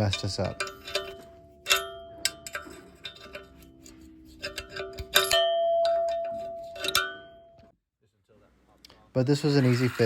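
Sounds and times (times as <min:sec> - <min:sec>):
metal clinking and tapping: 0:00.0 - 0:07.7
ringing metal clang: 0:00.0 - 0:07.7.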